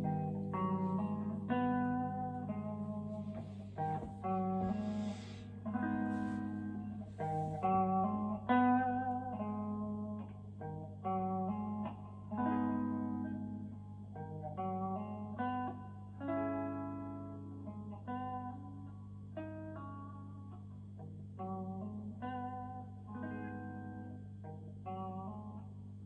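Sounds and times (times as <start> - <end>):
electric guitar notes and chords: 0.0 - 26.0.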